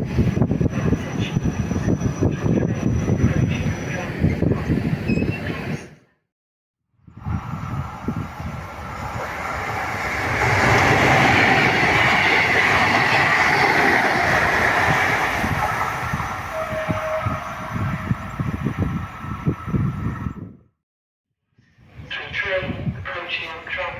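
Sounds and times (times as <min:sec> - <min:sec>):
train rumbling past: 0:00.0 - 0:05.9, 0:07.1 - 0:20.4
wheels clacking over rail joints: 0:09.2 - 0:16.5.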